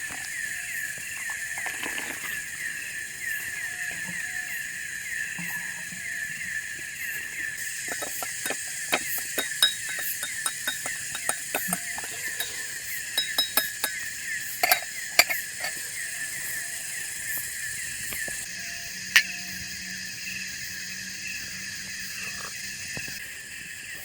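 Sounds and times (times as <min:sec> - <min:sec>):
sharp clinks and taps: 0:07.8 - 0:15.8.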